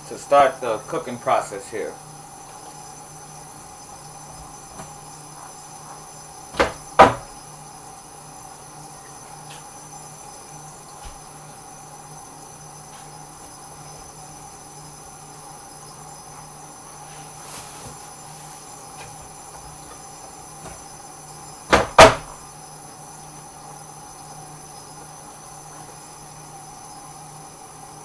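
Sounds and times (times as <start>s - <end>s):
steady low hum: 0.0s - 28.0s
sharp knocks: 6.5s - 7.4s, 21.7s - 22.4s.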